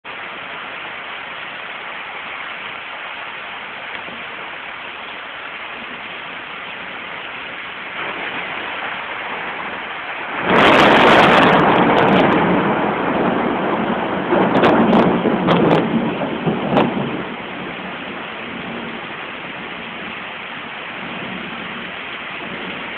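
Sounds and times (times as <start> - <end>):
steady rain falling: 0.0 - 22.9
thunder clap and rumble: 5.7 - 22.9.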